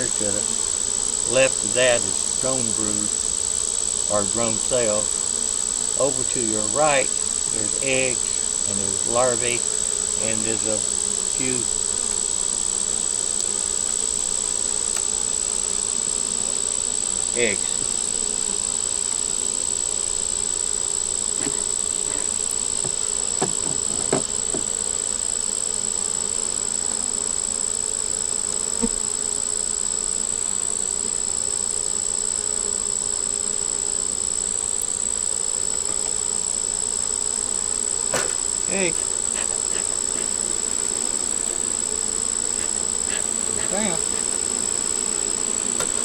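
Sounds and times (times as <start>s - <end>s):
bees buzzing: 0.0s - 46.0s
light knocks: 21.4s - 24.7s.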